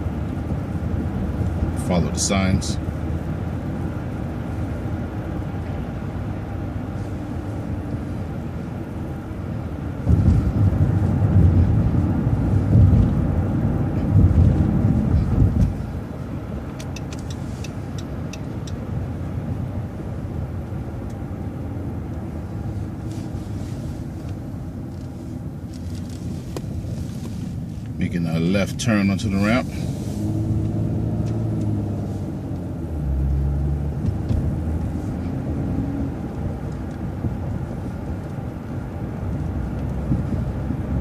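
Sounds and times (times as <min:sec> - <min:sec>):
bus engine and road noise: 0:00.0 - 0:41.0
low rumble: 0:02.8 - 0:41.0.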